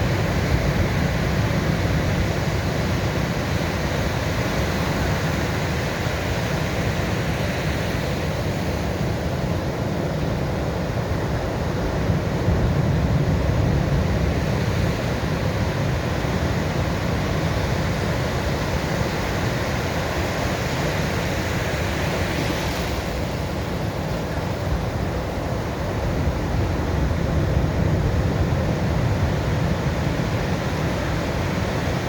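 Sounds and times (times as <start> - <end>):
sea waves breaking on shore: 0.0 - 32.0
hissing wash of surf: 13.9 - 32.0.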